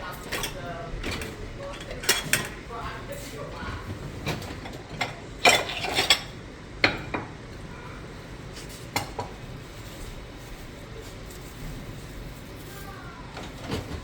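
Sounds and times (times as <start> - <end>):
plates and cutlery clinking: 0.2 - 7.3.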